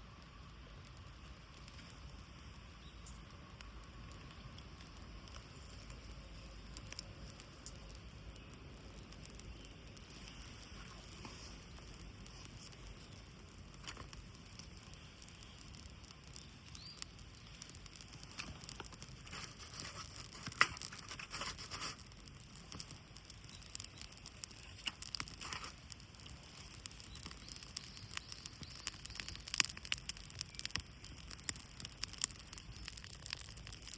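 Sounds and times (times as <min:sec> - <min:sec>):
birch bark crackling and scraping: 0:00.2 - 0:33.9.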